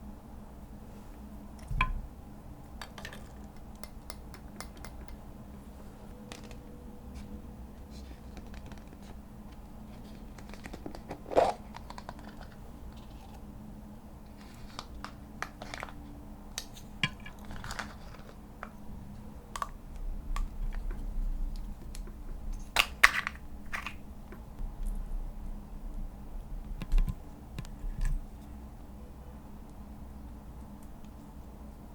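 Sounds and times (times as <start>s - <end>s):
small clicks and taps: 2.8s - 5.2s.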